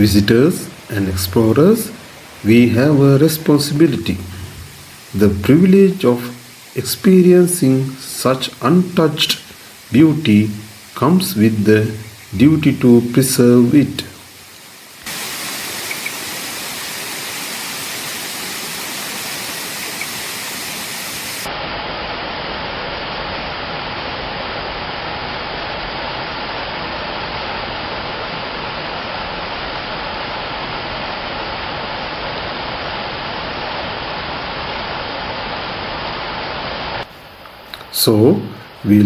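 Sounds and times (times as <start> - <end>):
waterfall rushing: 0.0 - 21.5.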